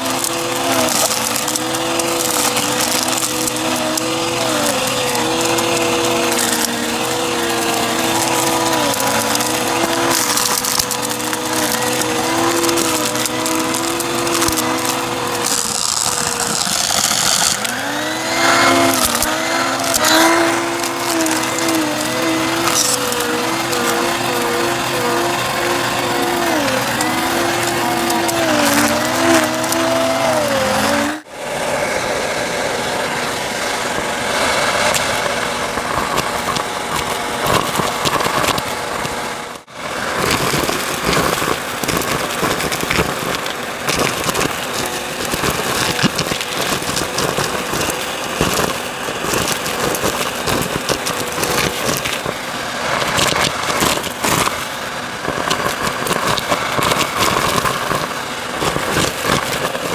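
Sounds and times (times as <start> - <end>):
debris rattling in vacuum: 0.0 - 59.9
vacuum cleaner motor whine: 0.0 - 59.9.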